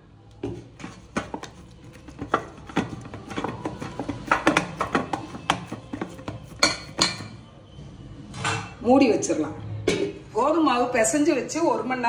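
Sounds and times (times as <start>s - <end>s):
kitchen utensils clinking: 0.8s - 7.4s.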